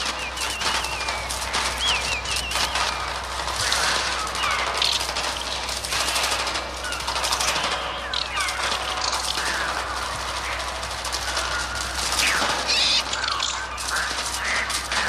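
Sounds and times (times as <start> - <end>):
electronic falling squawks: 0.0 - 15.0
electronic fluttering pulses: 0.0 - 15.0.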